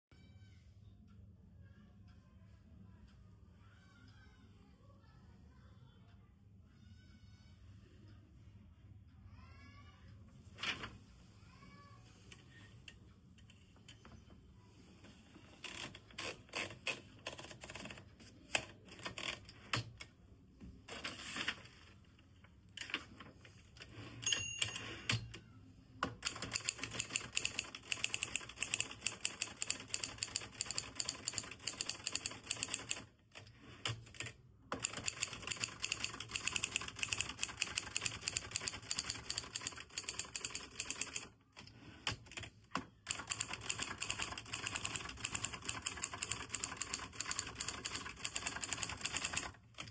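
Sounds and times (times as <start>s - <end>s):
manual typewriter typing: 15.6s - 19.9s, 26.0s - 42.5s, 43.1s - 49.9s
typewriter bell ringing: 24.2s - 25.2s.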